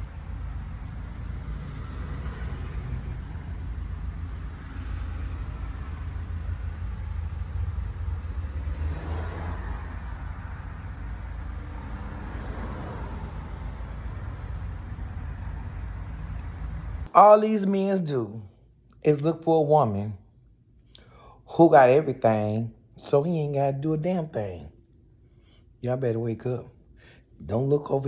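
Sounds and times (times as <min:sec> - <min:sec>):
car driving rumble: 0:00.0 - 0:17.1.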